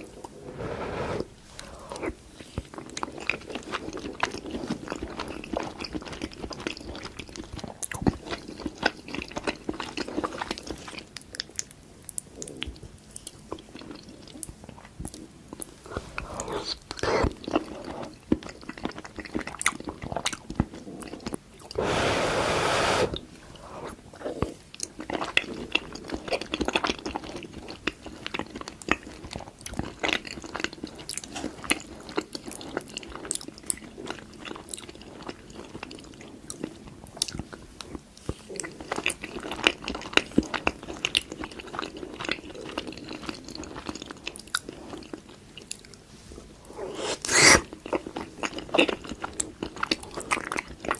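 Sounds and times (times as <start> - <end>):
person chewing food: 0.0 - 50.9
burst of hiss-like noise: 21.8 - 23.2.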